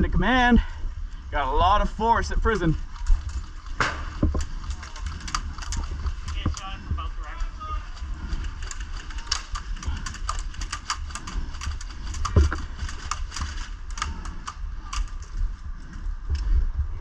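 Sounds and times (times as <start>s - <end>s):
airsoft guns firing: 3.7s - 5.8s.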